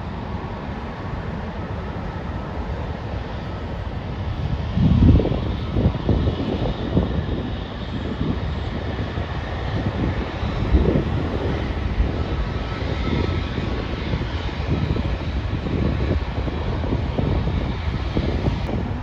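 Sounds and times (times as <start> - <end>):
jet engines roaring: 0.0 - 19.0
wind buffeting microphone: 0.0 - 19.0.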